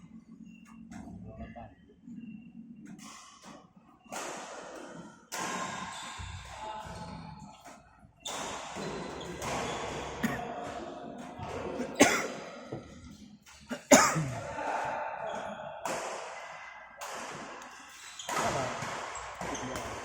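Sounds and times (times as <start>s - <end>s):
rackets hitting shuttlecock: 2.8s - 7.0s, 7.6s - 11.6s, 15.8s - 20.0s.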